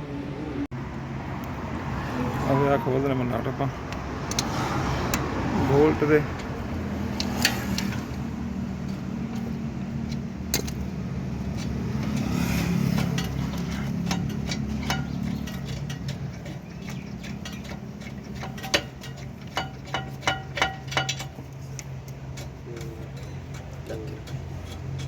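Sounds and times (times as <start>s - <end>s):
metal tools clicking and clinking: 6.3s - 25.0s.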